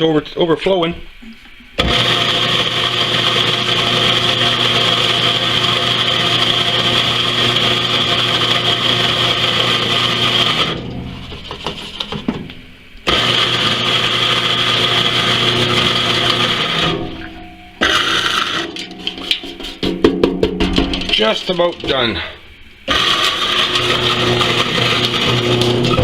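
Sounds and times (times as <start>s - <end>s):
electric coffee grinder grinding: 1.8s - 10.9s, 13.0s - 17.2s, 17.8s - 18.8s, 22.9s - 26.0s.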